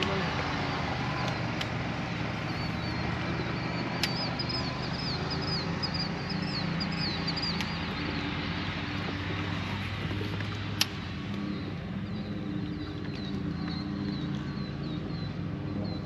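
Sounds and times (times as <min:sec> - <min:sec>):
boat motor drone: 0:00.0 - 0:16.0
sharp clicks: 0:01.2 - 0:01.8, 0:03.9 - 0:04.6, 0:07.3 - 0:07.8, 0:10.4 - 0:11.4
bird twittering: 0:02.2 - 0:09.8, 0:11.4 - 0:16.0.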